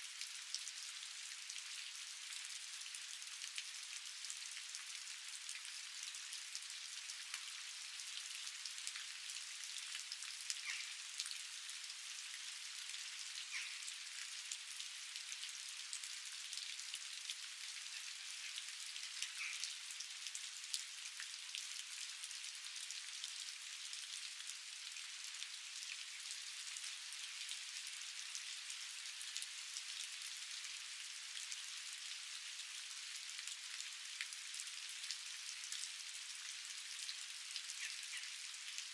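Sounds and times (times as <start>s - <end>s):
raindrops ticking on surfaces: 0.0s - 38.9s
steady rain hiss: 0.0s - 38.9s.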